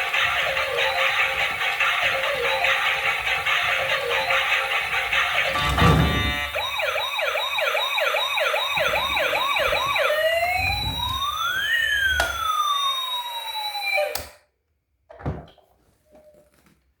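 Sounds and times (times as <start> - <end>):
siren yelp and wail: 6.4 - 14.4.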